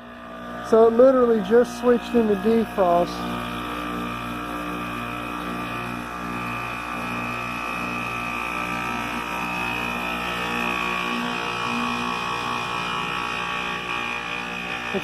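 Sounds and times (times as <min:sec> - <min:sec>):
compressor low hum: 0:00.0 - 0:15.0
high whine: 0:00.0 - 0:15.0
person speaking: 0:00.6 - 0:03.4.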